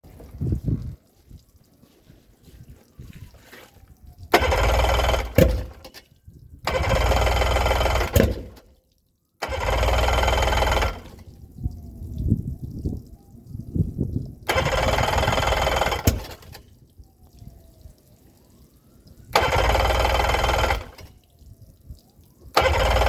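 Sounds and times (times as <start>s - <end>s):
engine cranking without starting: 4.3s - 8.7s, 9.4s - 11.3s, 14.5s - 16.6s, 19.3s - 21.1s, 22.5s - 23.0s.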